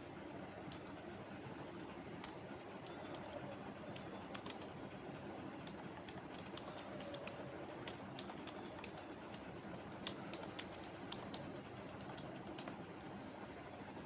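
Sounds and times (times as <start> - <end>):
computer keyboard keystrokes: 0.7 - 1.0, 2.2 - 4.7, 5.6 - 13.6.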